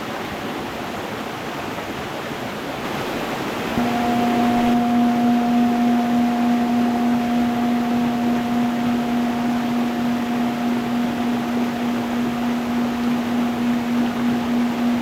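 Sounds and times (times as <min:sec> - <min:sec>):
steady low drone tone: 0:03.7 - 0:15.0.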